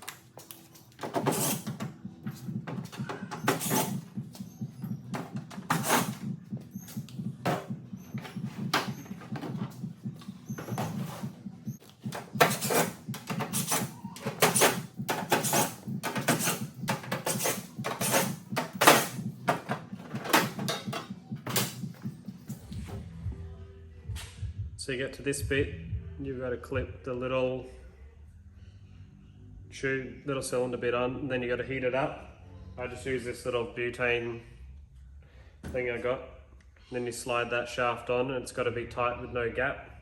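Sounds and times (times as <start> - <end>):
steady low hum: 0.1 - 27.0.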